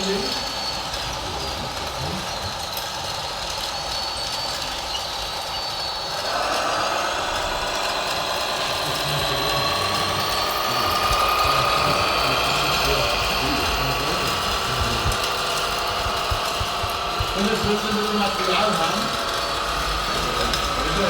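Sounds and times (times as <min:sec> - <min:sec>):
model machinery motor whirring: 0:00.0 - 0:21.0
motor whine rising in pitch: 0:05.7 - 0:21.0.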